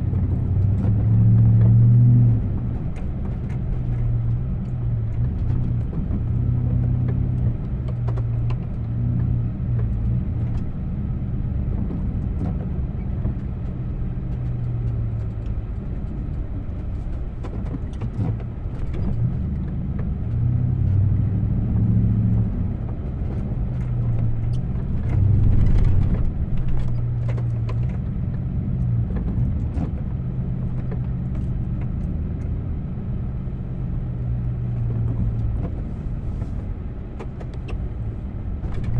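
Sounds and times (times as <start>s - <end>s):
vehicle engine running: 0.0s - 38.9s.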